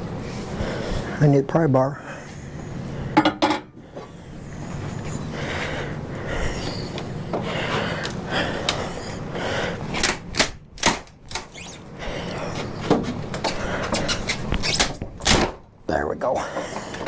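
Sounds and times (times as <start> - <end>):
wood and nails creaking: 10.0 - 15.0.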